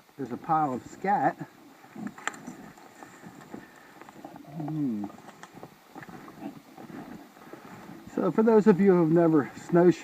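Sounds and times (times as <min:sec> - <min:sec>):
snowshoe steps crunching snow: 0:00.5 - 0:10.0.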